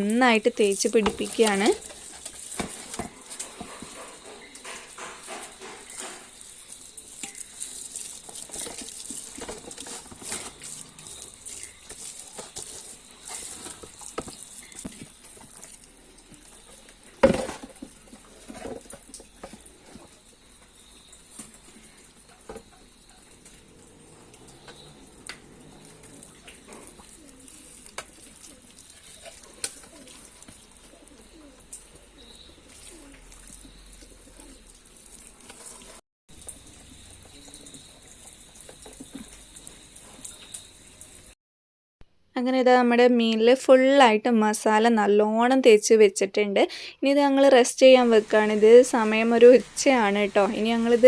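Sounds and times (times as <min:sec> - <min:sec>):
hands rubbing wet paste on fish: 0:00.6 - 0:16.6, 0:25.9 - 0:31.4.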